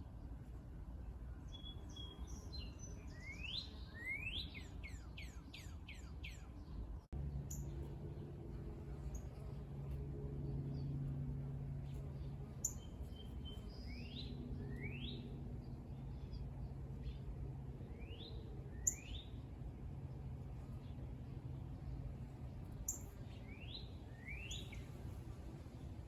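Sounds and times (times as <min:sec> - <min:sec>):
songbird whistled notes: 0:01.5 - 0:06.4
steady low hum: 0:06.7 - 0:26.0.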